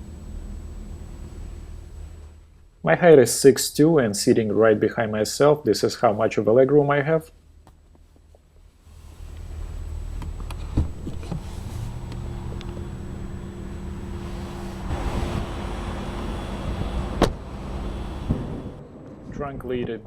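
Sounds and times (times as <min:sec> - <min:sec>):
car running hum: 0:00.0 - 0:02.8, 0:07.6 - 0:20.0
knocks and clicks of car body: 0:17.2 - 0:17.4.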